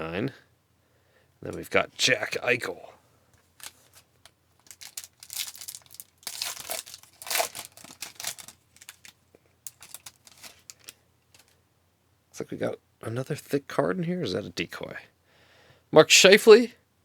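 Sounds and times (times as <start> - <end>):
card pack wrapper tearing: 4.6 - 11.5.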